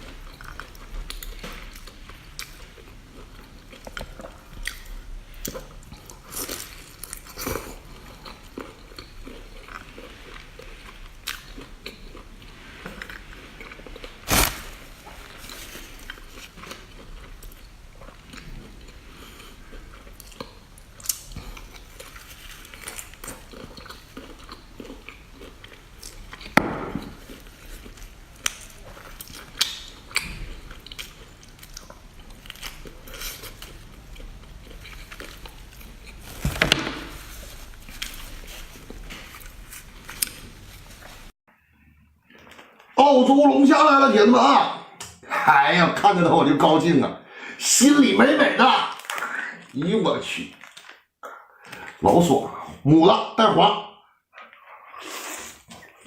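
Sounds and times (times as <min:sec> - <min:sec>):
person chewing and biting: 0:00.0 - 0:36.4
sharp cracks: 0:14.2 - 0:14.8.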